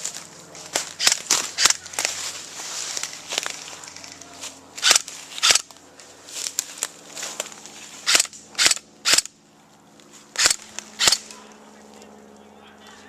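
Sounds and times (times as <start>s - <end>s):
airsoft gun shots: 4.8s - 5.6s, 8.1s - 9.3s, 10.4s - 11.3s.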